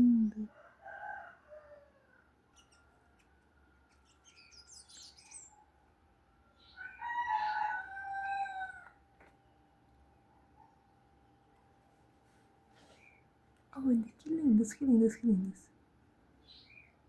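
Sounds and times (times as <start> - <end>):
small birds chirping: 2.4 - 5.8, 6.5 - 7.9, 12.8 - 17.0.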